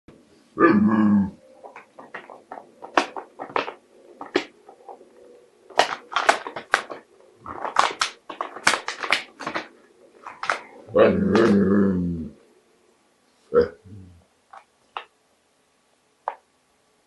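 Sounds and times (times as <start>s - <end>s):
plastic bottle crinkling: 1.6s - 10.8s.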